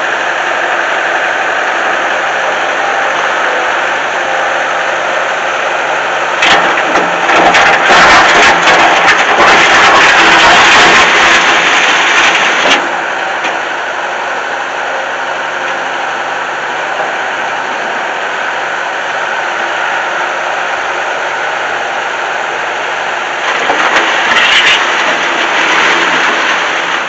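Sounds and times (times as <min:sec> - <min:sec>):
diesel engine running: 0:00.0 - 0:27.0
loud rough machine sound: 0:00.0 - 0:27.0.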